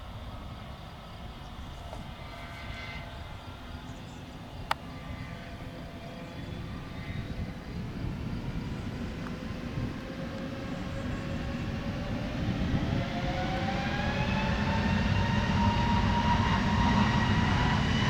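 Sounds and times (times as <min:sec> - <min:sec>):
jet engines rumbling with whine: 0:00.0 - 0:18.0.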